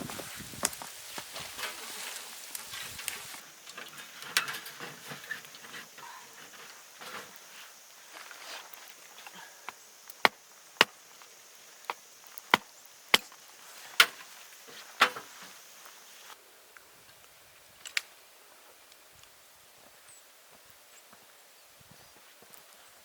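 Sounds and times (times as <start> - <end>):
firewood chopping cracks: 9.7 - 11.0, 11.8 - 13.4, 14.0 - 14.3, 15.0 - 15.3.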